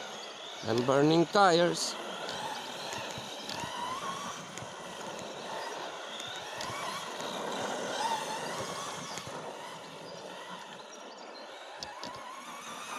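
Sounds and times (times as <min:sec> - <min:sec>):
electric motor whining: 0:00.0 - 0:12.9.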